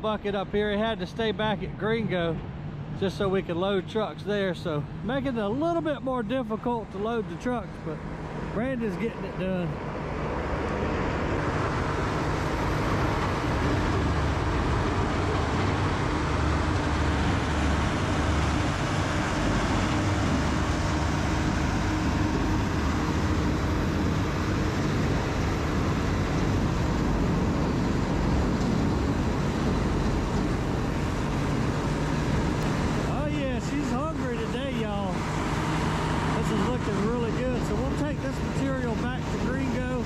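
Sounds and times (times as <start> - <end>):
low engine hum: 0.0 - 40.0
wood grinder machine noise: 8.7 - 40.0.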